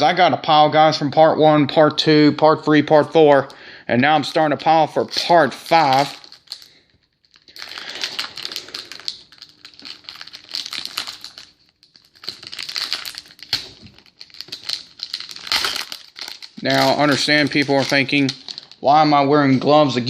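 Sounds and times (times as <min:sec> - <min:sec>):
cards and wrapper crinkling: 0:05.0 - 0:18.8.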